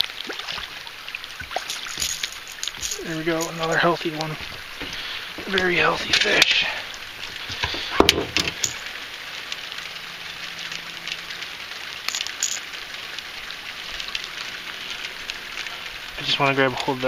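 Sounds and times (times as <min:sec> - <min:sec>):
light rain pattering: 0:00.0 - 0:17.0.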